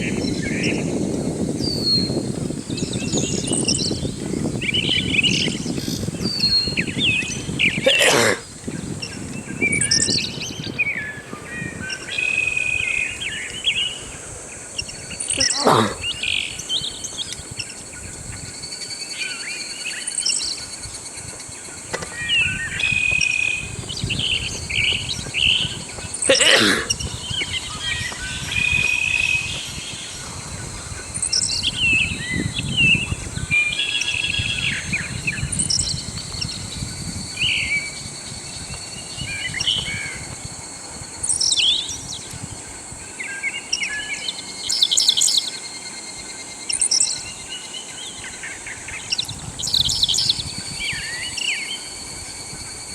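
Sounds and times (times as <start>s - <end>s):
birds chirping and trilling: 0.0s - 52.9s
high-pitched insect drone: 0.0s - 52.9s
loud rising bird call: 6.3s - 14.2s, 15.2s - 16.9s, 21.9s - 35.2s.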